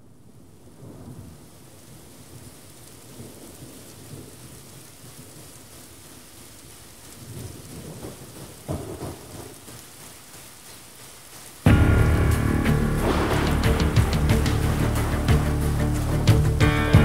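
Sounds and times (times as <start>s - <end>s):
steady rain: 0.0s - 17.0s
thunder rumbling: 7.2s - 9.8s, 11.6s - 17.0s
thunder clap: 11.7s - 17.0s.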